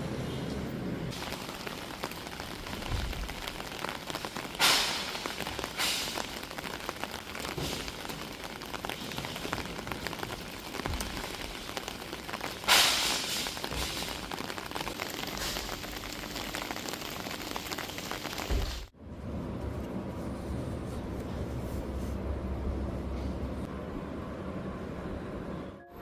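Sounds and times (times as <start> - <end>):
rain patter: 1.1 - 19.0.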